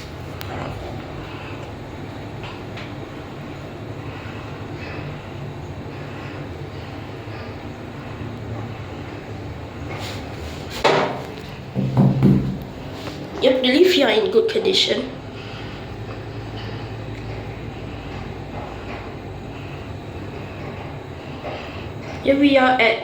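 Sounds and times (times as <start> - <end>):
lift car humming and rumbling: 0.0 - 23.0
sharp knock: 11.8 - 12.7.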